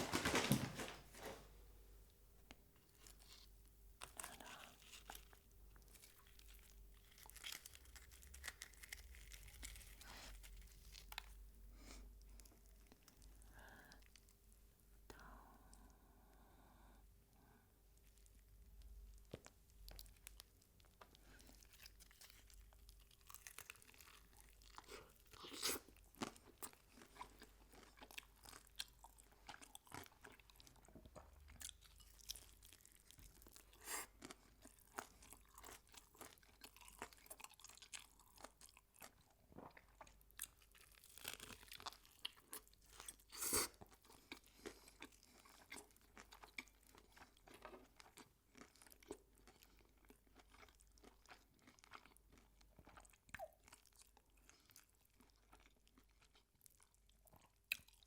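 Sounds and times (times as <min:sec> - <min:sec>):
person chewing crispy fried chicken: 0:03.0 - 0:11.4, 0:19.2 - 0:58.0.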